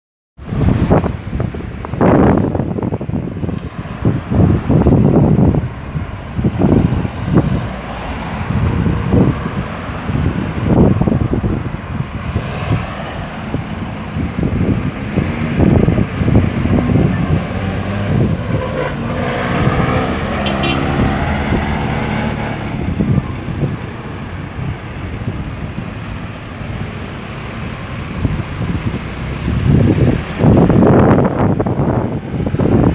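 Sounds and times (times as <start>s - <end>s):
road traffic passing: 0.4s - 32.9s
vehicle engine passing by: 12.2s - 24.5s.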